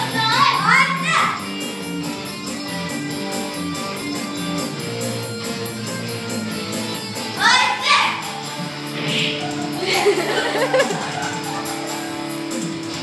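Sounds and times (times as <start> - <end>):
melodic backing music: 0.0 - 13.0
loud sweeping sounds: 8.9 - 9.6.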